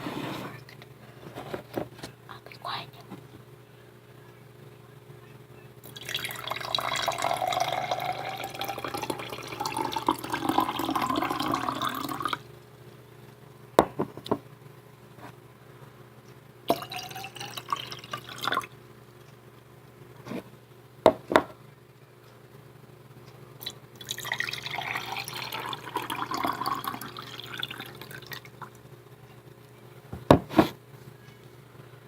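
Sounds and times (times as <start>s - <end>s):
water pouring into glass: 5.9s - 12.4s, 16.7s - 18.7s, 24.0s - 28.6s.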